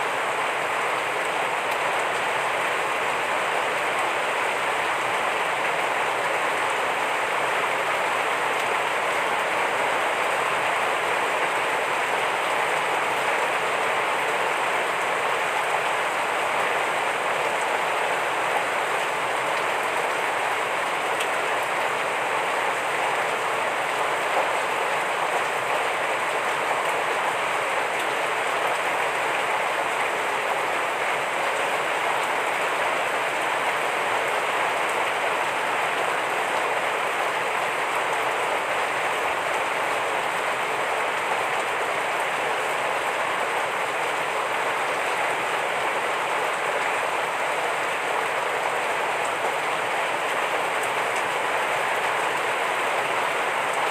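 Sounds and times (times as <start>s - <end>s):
heavy rain falling: 0.0s - 53.9s.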